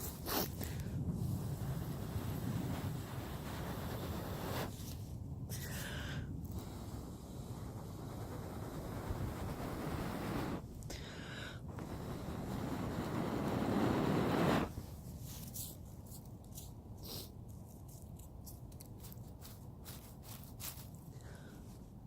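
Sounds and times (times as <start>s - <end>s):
wind buffeting microphone: 0.0s - 5.6s, 6.3s - 10.8s
handling clicks and scrapes: 14.9s - 21.2s.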